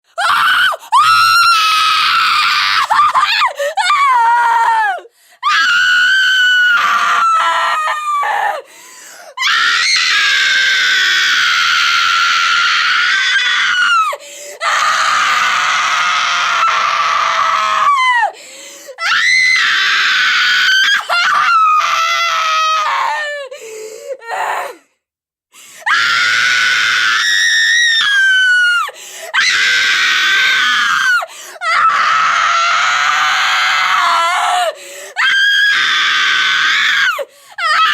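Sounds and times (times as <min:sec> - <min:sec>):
woman gasping: 0:14.2 - 0:14.6, 0:34.8 - 0:35.2.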